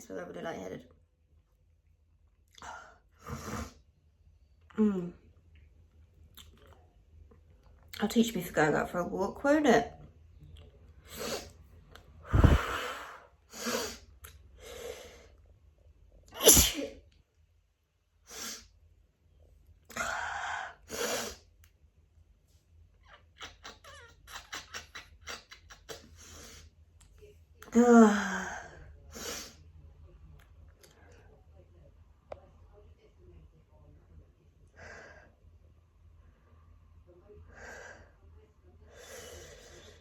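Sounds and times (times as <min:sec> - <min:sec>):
person sneezing: 0:16.4 - 0:17.0.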